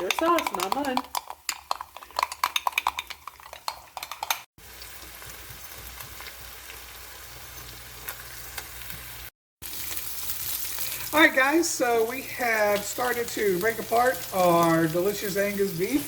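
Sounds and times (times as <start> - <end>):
spoon stirring sauce in a bowl: 0.0 - 4.5
food sizzling in a skillet: 4.6 - 16.0.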